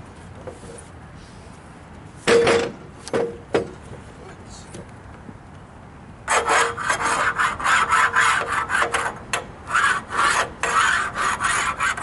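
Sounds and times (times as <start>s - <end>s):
rough scraping strokes: 6.3s - 12.0s.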